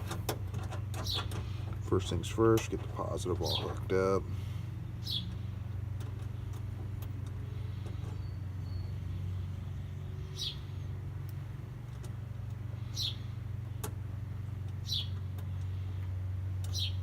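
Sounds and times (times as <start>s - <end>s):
vehicle engine humming: 0.0s - 17.0s
bird chirping: 1.0s - 1.6s, 4.9s - 5.5s, 7.4s - 11.0s, 12.8s - 13.4s, 14.8s - 15.6s, 16.7s - 17.0s.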